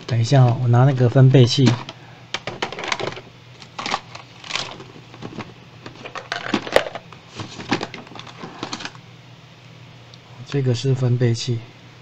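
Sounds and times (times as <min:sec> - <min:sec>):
low steady hum: 0:00.0 - 0:12.0
clicks and knocks of small objects: 0:01.6 - 0:09.0.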